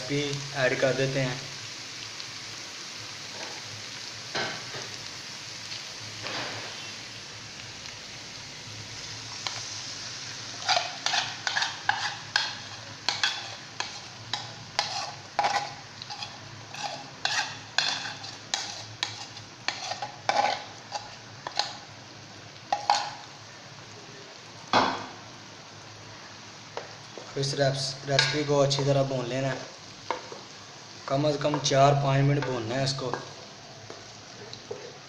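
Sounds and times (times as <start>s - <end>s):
masala sizzling in hot oil: 0.0s - 35.0s
spoon scraping a pan: 10.5s - 21.8s, 22.7s - 23.3s.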